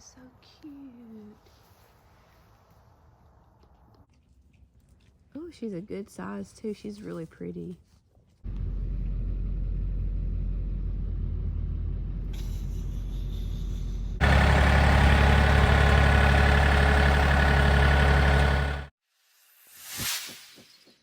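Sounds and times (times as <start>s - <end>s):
engine humming: 8.5s - 13.0s, 13.9s - 18.9s.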